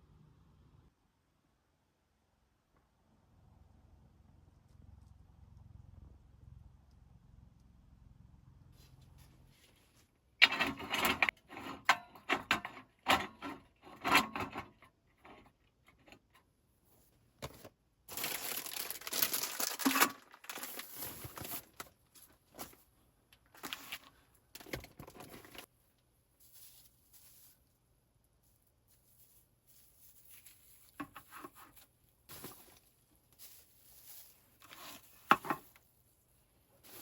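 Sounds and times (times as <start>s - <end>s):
rustling or crinkling: 8.8s - 11.8s, 12.8s - 37.0s
objects being handled: 9.2s - 25.7s, 28.4s - 37.0s.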